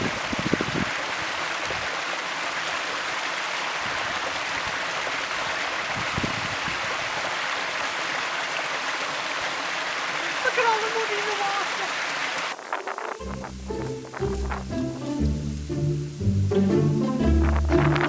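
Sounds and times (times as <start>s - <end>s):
stream rushing over rocks: 0.0s - 18.0s
low thumps: 13.2s - 18.0s.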